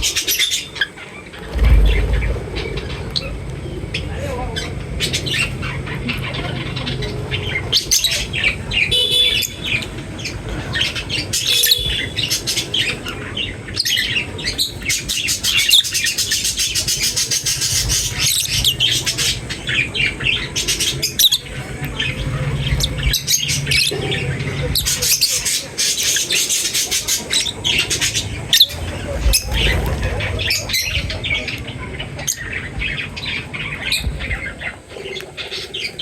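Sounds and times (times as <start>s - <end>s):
birds chirping and squawking: 0.0s - 36.0s
steady low hum: 0.0s - 36.0s.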